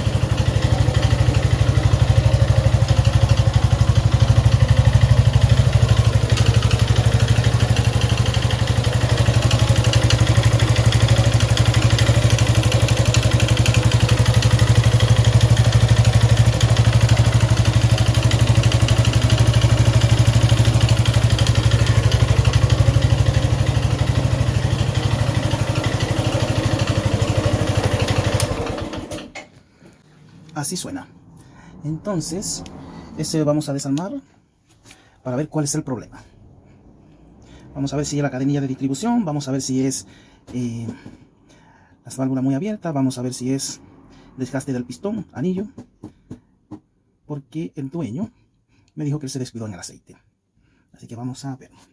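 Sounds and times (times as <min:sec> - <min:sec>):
motorcycle engine idling: 0:00.0 - 0:29.2.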